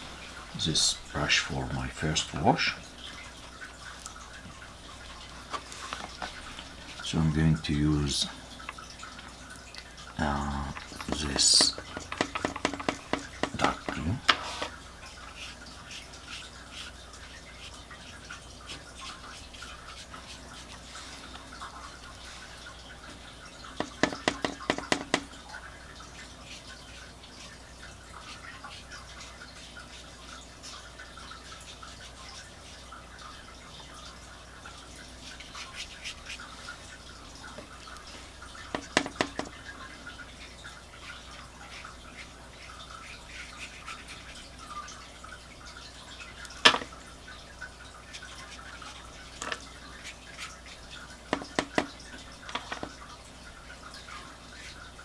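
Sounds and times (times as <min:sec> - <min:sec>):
brush scrubbing paint on paper: 0:05.4 - 0:07.1, 0:10.6 - 0:25.2, 0:26.1 - 0:32.9, 0:34.8 - 0:45.1, 0:48.0 - 0:53.0
brush tapping: 0:10.2 - 0:16.9, 0:23.1 - 0:25.4, 0:37.5 - 0:44.4, 0:51.3 - 0:53.0.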